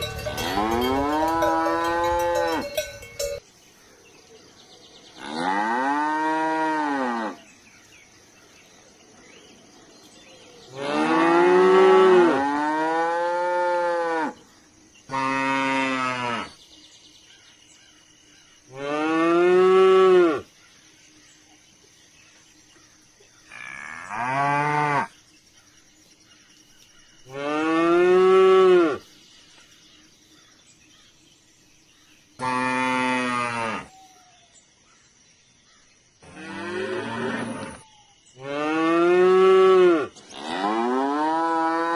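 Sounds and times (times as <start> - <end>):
cow mooing: 0.0 - 2.9, 5.2 - 7.4, 10.7 - 14.4, 15.1 - 16.6, 23.5 - 25.1, 32.4 - 33.9, 36.2 - 37.8, 38.4 - 41.9.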